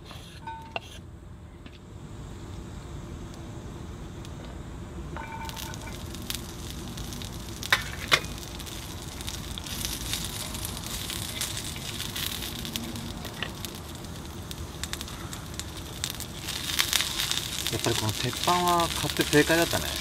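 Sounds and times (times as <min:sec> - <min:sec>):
campfire crackles and pops: 0:05.2 - 0:20.0
food sizzling on a griddle: 0:05.2 - 0:20.0.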